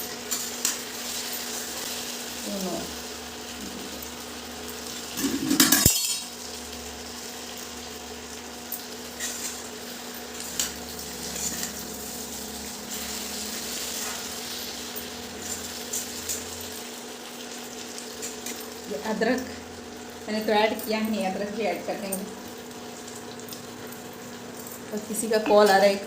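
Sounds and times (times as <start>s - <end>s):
faint sizzle: 0.0s - 26.0s
metal spoon scraping a pan: 9.2s - 9.7s, 10.4s - 11.8s.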